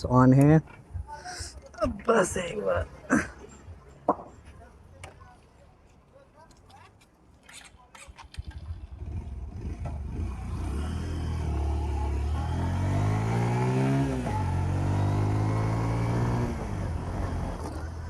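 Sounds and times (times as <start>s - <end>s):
motorcycle engine accelerating: 8.0s - 18.0s.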